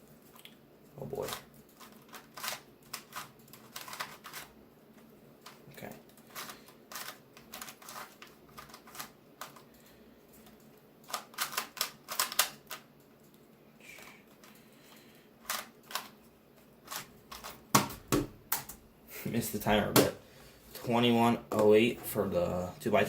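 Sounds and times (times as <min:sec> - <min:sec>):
plastic puzzle clicking: 0:05.4 - 0:09.7, 0:10.4 - 0:12.9.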